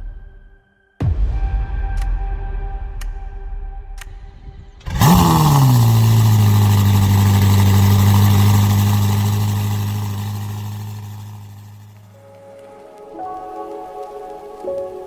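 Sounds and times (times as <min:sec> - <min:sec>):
car engine starting and revving: 0:04.8 - 0:12.1
car engine idling: 0:04.9 - 0:12.1.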